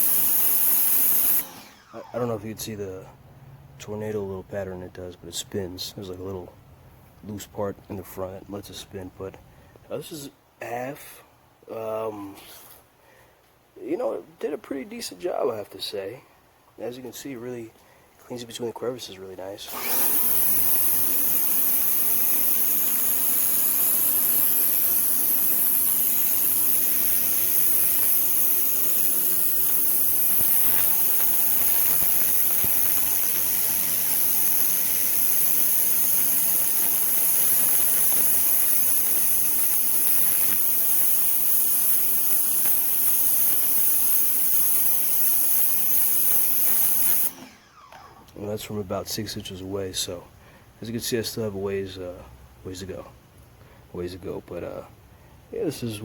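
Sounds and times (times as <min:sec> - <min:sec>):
electric pump motor humming: 0:00.0 - 0:02.3, 0:19.7 - 0:48.4
pressure washer water jet hissing: 0:00.0 - 0:02.6, 0:19.7 - 0:48.2.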